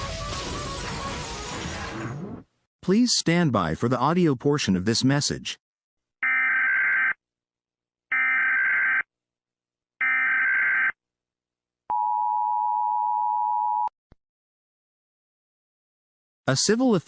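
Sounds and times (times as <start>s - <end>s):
two-tone alarm: 6.2s - 7.2s, 8.1s - 9.1s, 10.0s - 11.0s.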